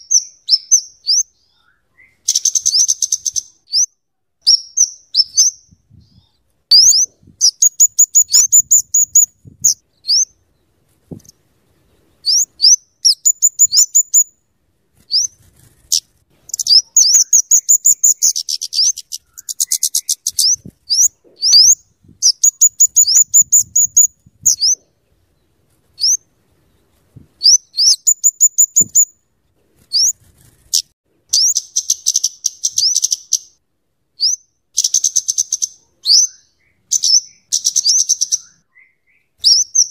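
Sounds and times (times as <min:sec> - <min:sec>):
bird calling with ticking chatter: 0:06.7 - 0:10.2, 0:12.3 - 0:14.3, 0:15.9 - 0:24.9, 0:27.5 - 0:29.1.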